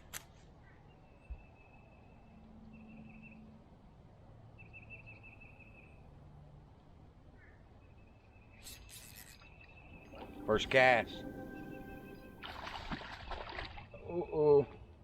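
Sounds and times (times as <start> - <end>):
faint low hum: 10.0 - 13.2.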